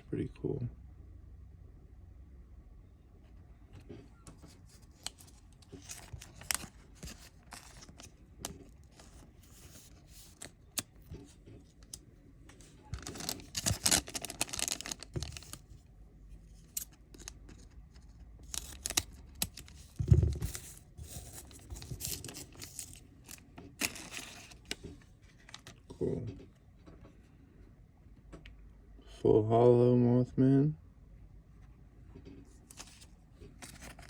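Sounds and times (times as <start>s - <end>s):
foil wrapper crinkling: 4.7s - 10.9s, 13.0s - 15.7s.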